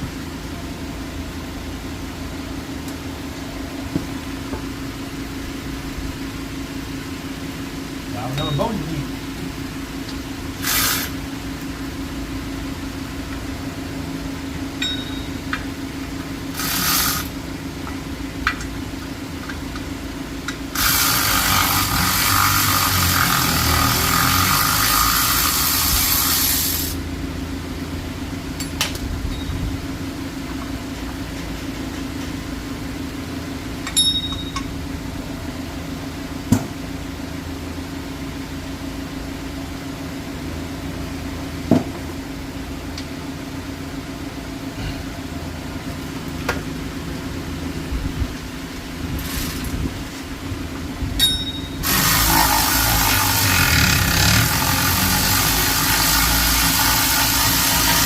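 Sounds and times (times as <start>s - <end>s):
steady hum: 0.0s - 58.0s
sharp metal clinks: 14.8s - 15.4s, 33.9s - 34.7s, 51.2s - 51.8s
hissing spray: 51.8s - 58.0s.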